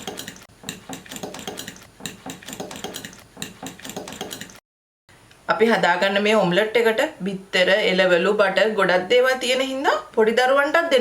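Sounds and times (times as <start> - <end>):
utensil clicking against bowl: 0.0 - 4.6.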